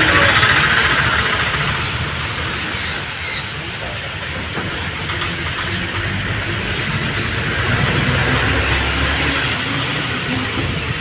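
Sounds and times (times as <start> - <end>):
bus engine hum: 0.0 - 11.0
road and wind noise: 0.0 - 11.0.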